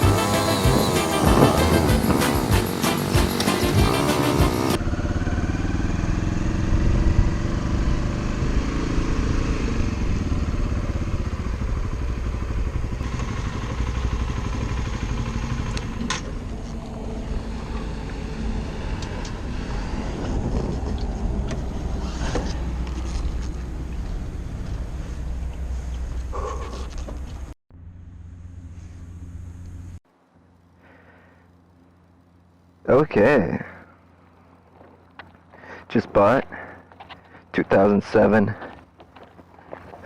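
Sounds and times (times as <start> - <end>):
music: 0.0 - 4.8
motorcycle engine running: 0.0 - 37.4.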